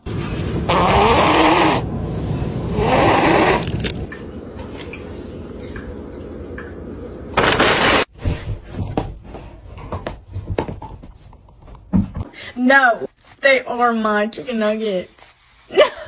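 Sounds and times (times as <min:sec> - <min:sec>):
loud rasping snores: 0:00.7 - 0:01.9, 0:02.7 - 0:03.7.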